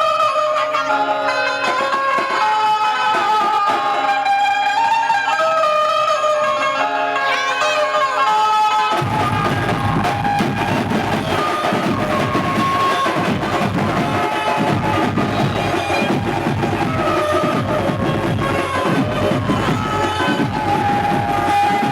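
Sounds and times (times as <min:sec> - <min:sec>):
fast drum rhythm: 0:09.0 - 0:21.9
sustained melody: 0:09.0 - 0:21.9.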